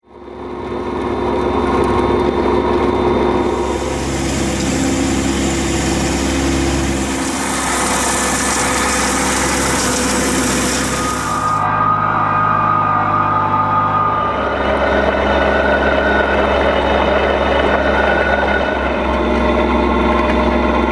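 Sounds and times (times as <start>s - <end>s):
engine running steadily: 3.4s - 11.7s.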